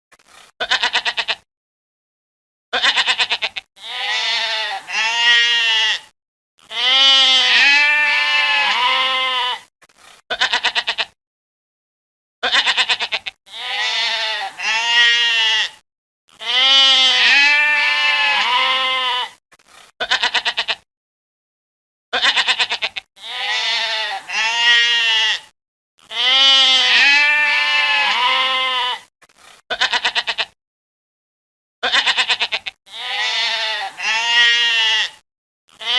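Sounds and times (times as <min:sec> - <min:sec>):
goat bleating: 0:00.6 - 0:01.5, 0:02.8 - 0:09.7, 0:10.3 - 0:11.2, 0:12.4 - 0:19.4, 0:20.0 - 0:20.8, 0:22.1 - 0:29.1, 0:29.7 - 0:30.6, 0:31.8 - 0:35.9.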